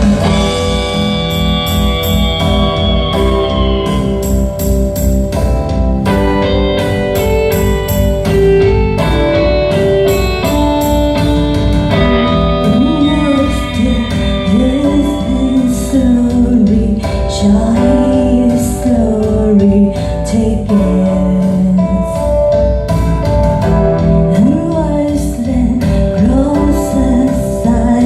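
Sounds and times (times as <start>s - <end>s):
person singing with vibrato: 0.0s - 4.5s, 11.9s - 22.6s, 23.9s - 28.0s
plucked guitar notes: 0.0s - 28.0s.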